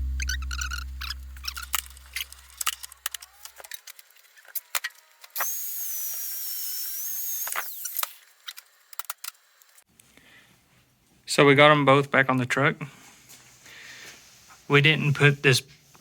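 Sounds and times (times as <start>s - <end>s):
power tool high whine: 4.5s - 8.1s.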